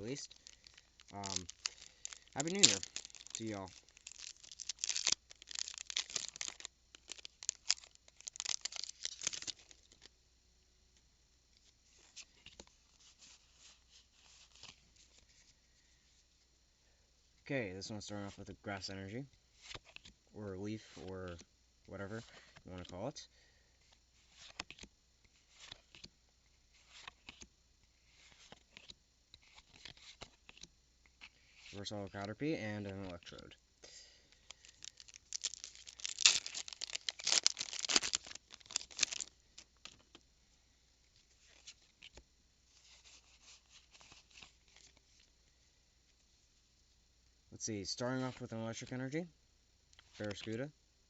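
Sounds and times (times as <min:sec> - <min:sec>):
foil wrapper tearing and crinkling: 0:00.0 - 0:10.0, 0:34.4 - 0:40.0
trading cards being flipped: 0:00.0 - 0:10.0, 0:26.8 - 0:27.5.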